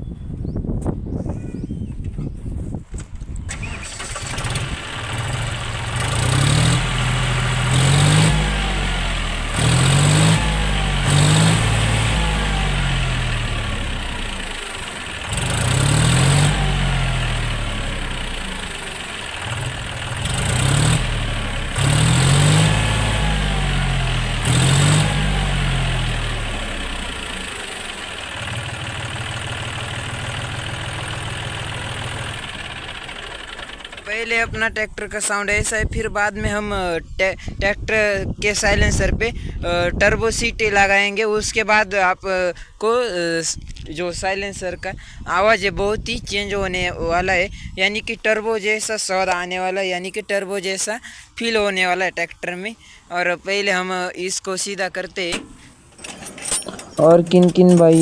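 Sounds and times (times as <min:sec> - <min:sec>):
tractor diesel engine revving: 0:03.5 - 0:35.3, 0:54.9 - 0:58.0.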